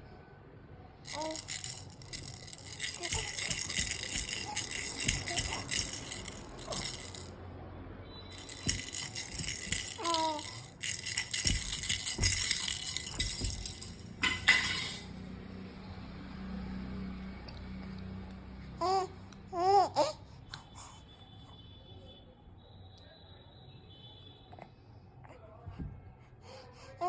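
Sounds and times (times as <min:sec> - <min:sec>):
baby rattle shaken: 0:01.0 - 0:07.4, 0:08.3 - 0:15.2.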